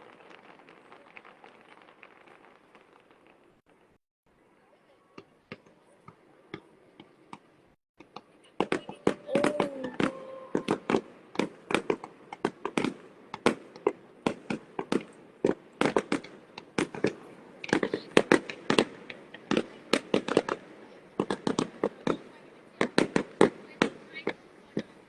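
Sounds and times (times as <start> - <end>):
fireworks bangs and cracks: 0.0 - 4.0, 8.5 - 25.0.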